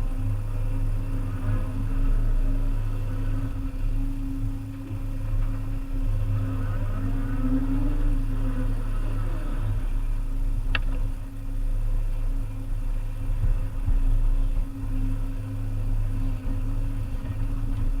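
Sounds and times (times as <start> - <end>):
wavering hydraulic whine: 0.0 - 18.0.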